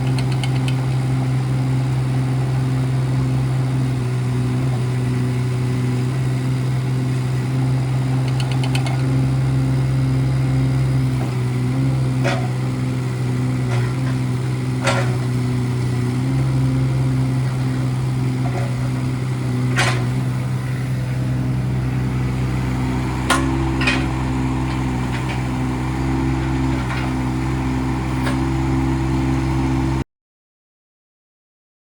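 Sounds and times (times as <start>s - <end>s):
diesel excavator engine running: 0.0s - 30.0s
sharp metallic knocks: 23.3s - 24.2s.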